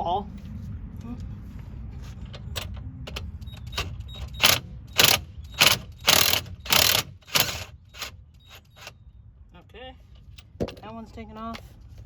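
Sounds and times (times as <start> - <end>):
ratchet wrench clicking: 2.4 - 8.9.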